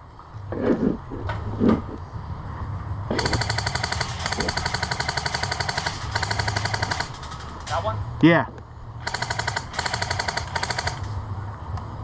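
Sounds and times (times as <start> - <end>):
airsoft gun firing full auto: 3.2 - 7.4, 9.0 - 11.2.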